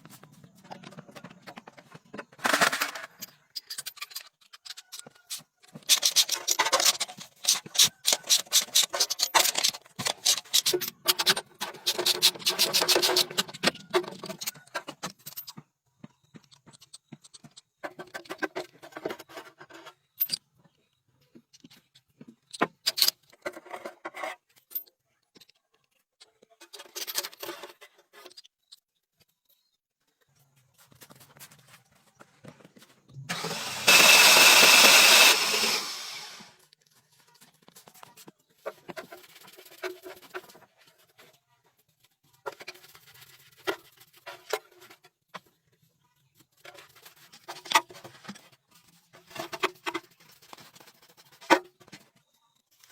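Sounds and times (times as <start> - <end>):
tool scrapes and knocks: 33.3 - 36.5
power tool running: 33.3 - 36.6.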